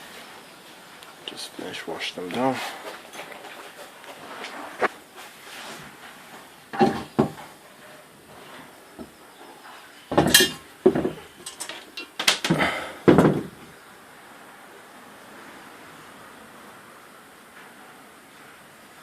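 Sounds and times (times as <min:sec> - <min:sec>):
metal parts clinking: 0:10.1 - 0:12.5.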